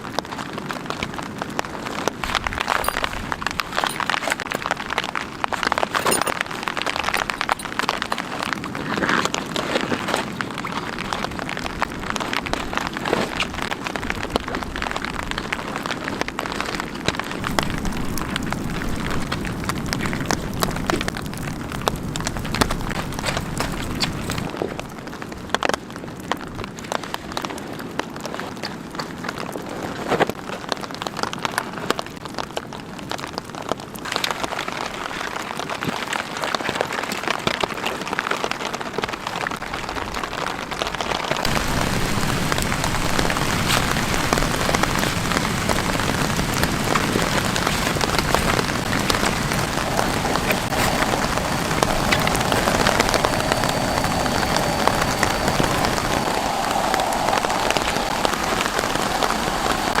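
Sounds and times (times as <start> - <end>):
steady rain falling: 0.0 - 60.0.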